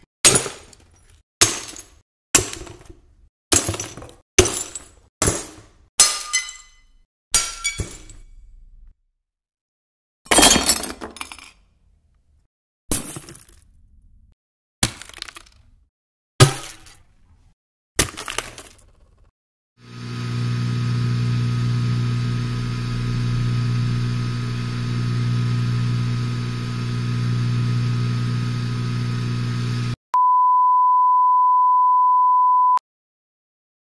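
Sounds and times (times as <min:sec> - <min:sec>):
low hum with high tone: 0:20.2 - 0:32.8
steady beep: 0:30.2 - 0:32.8.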